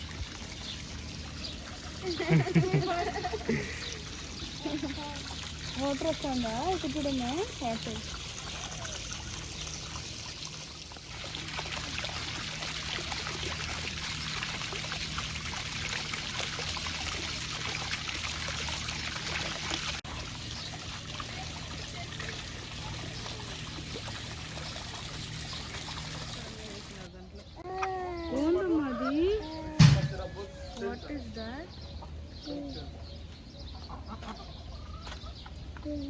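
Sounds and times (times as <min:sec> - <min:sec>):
water running and trickling: 0:00.0 - 0:27.1.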